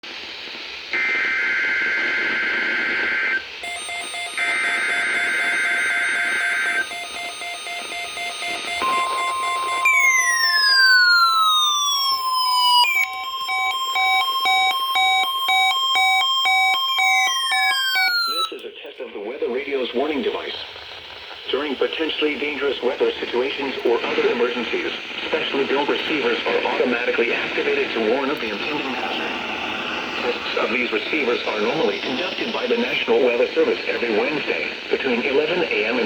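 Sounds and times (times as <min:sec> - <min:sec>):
screeching data tones: 0:01.0 - 0:18.6, 0:27.8 - 0:33.4
steady warning alarm tone: 0:02.7 - 0:18.6, 0:28.8 - 0:33.2
alert radio beeps and sweeping tones: 0:03.6 - 0:18.6.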